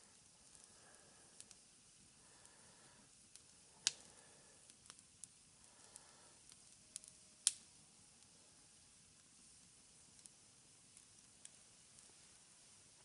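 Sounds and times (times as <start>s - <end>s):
campfire crackling: 0.0s - 13.0s
sharp fire pops: 3.3s - 4.1s, 4.8s - 7.7s.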